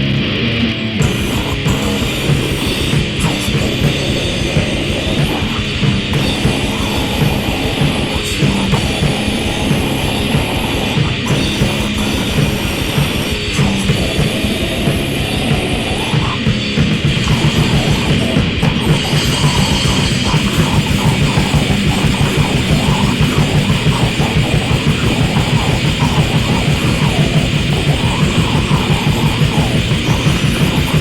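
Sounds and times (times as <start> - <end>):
distorted guitars: 0.0 - 31.0
drums: 0.0 - 31.0.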